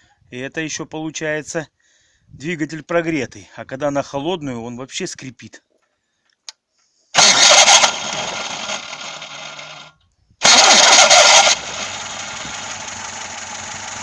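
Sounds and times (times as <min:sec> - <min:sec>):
starter screech: 0:07.2 - 0:13.4
starter cranking engine: 0:07.2 - 0:14.0
car engine running: 0:10.4 - 0:14.0.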